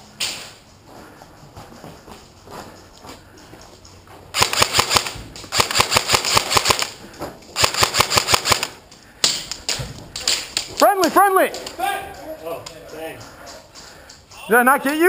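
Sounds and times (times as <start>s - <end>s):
airsoft rifle bursts: 4.3s - 7.0s, 7.6s - 8.8s.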